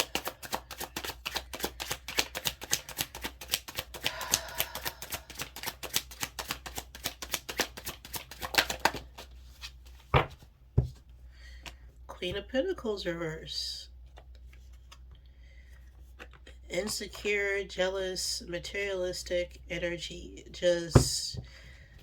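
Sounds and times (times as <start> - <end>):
cards being shuffled by hand: 0.0 - 11.8.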